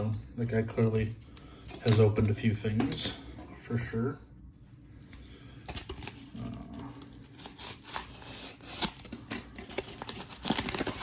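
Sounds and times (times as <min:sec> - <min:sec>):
packaging rustling and crinkling: 0:05.7 - 0:11.0.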